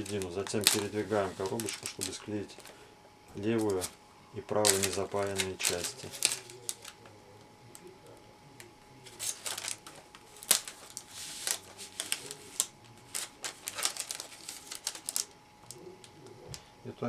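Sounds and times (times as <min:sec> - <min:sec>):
plastic film crinkling: 0:00.0 - 0:16.7.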